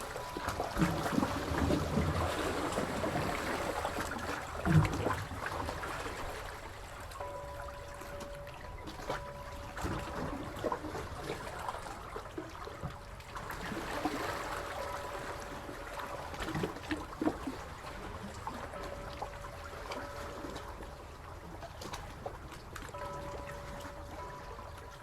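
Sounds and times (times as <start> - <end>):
seawater trickling and lapping: 0.0 - 25.0
water splashes and drips: 0.0 - 25.0.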